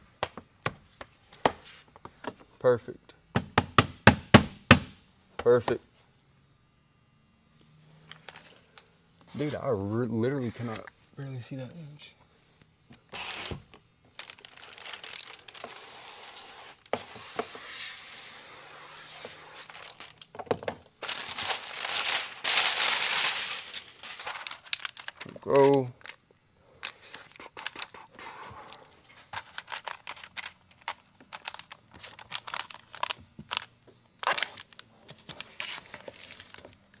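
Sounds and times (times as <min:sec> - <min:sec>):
plastic film crinkling: 0:13.1 - 0:20.4, 0:21.0 - 0:37.0.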